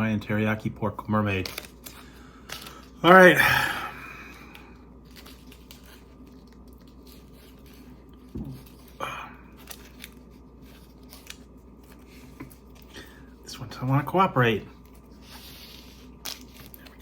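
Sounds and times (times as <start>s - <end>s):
faint steady hum: 0.0s - 17.0s
plastic wrapper clicks and crinkles: 1.3s - 2.9s.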